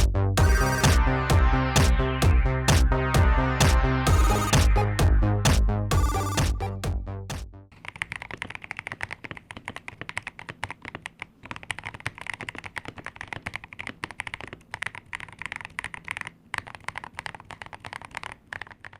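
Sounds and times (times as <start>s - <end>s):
fast typing on mechanical keyboard: 7.8s - 18.9s.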